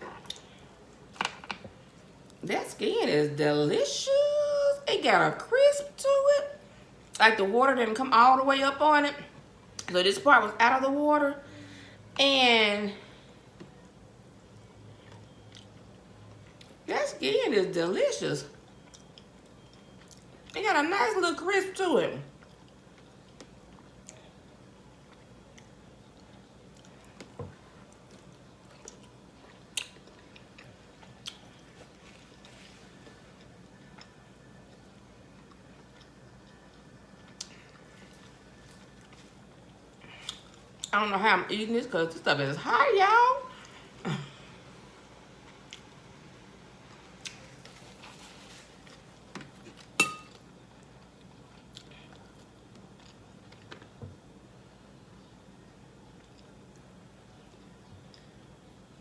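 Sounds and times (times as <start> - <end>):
quiet chewing: 13.6 - 16.8, 25.0 - 40.9, 46.9 - 54.0, 56.1 - 58.4
tableware clinking: 50.0 - 50.4.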